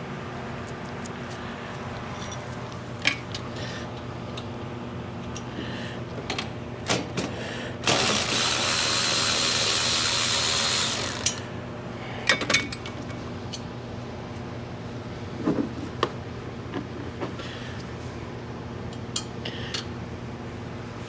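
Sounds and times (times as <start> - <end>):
power tool whirring: 7.8 - 11.5.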